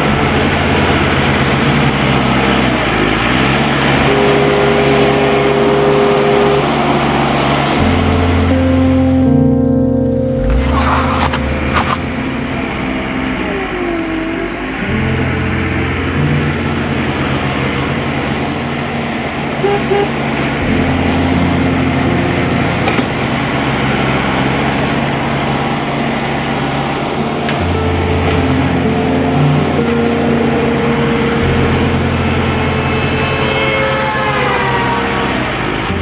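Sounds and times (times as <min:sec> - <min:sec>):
brief gliding whine: 0:10.1 - 0:15.3, 0:31.4 - 0:36.0.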